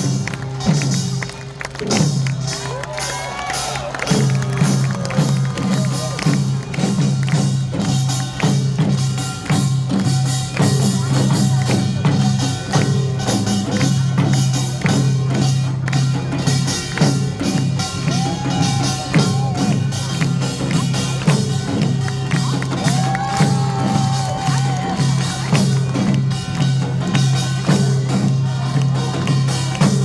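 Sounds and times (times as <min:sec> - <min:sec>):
rapid percussion strikes: 0:00.0 - 0:30.0
loud music: 0:17.8 - 0:21.2, 0:22.0 - 0:26.5.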